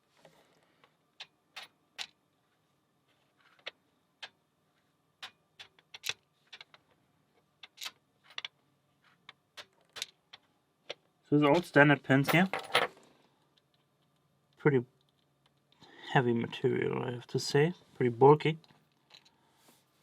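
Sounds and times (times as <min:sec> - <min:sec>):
small metal lock parts clicking: 0:05.2 - 0:06.8, 0:07.6 - 0:11.0.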